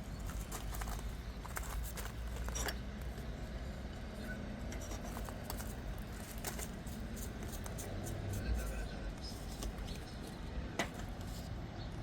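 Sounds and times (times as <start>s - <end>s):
hands handling pots and soil: 0.0s - 3.3s, 4.7s - 11.6s.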